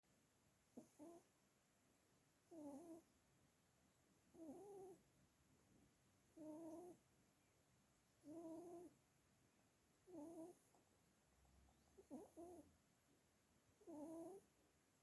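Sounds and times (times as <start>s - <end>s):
rabbit snoring: 0.7s - 1.4s, 2.4s - 3.1s, 4.3s - 5.1s, 6.3s - 7.0s, 8.2s - 9.0s, 10.0s - 10.8s, 11.5s - 12.8s, 13.8s - 14.6s.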